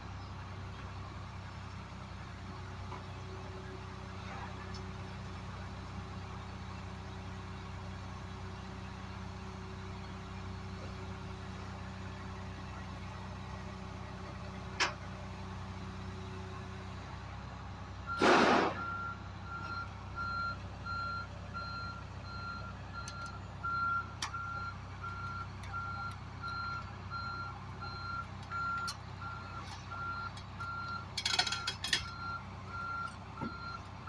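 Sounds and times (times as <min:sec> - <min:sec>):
low engine hum: 0:00.0 - 0:34.0
loud burst of hiss: 0:18.2 - 0:18.8.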